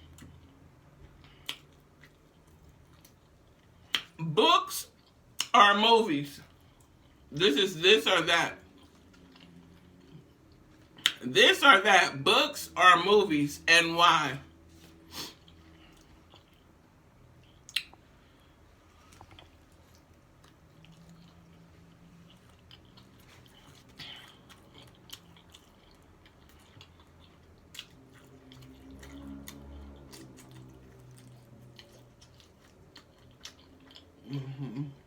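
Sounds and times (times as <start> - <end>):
person chewing food: 0.0 - 4.2, 6.4 - 7.3, 8.6 - 11.2, 14.8 - 35.0.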